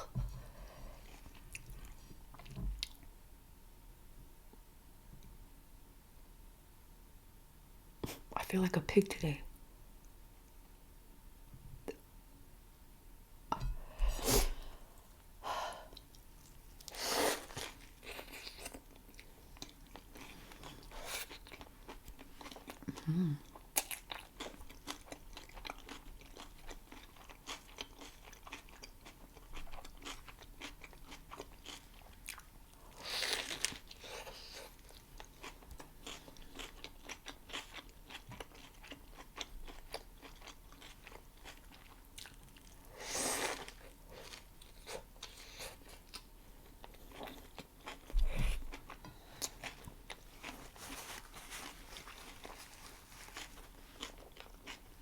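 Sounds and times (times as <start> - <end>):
wet crunchy chewing: 48.8 - 55.0.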